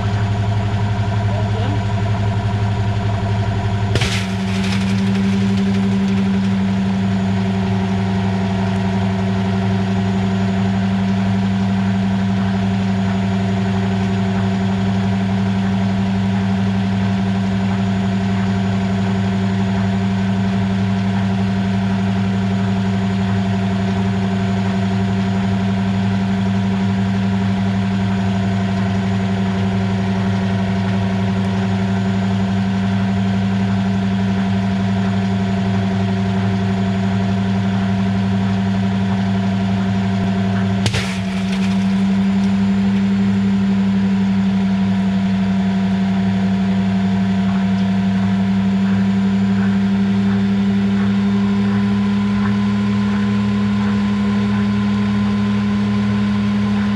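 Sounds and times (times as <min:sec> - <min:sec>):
sharp pop: 0:03.9 - 0:06.8, 0:40.8 - 0:42.6.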